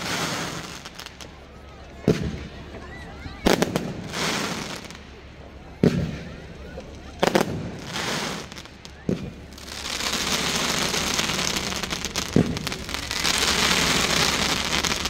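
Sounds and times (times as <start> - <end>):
fireworks crackling: 0.0 - 15.0
firework bang: 2.0 - 2.5, 5.8 - 6.4, 7.2 - 15.0.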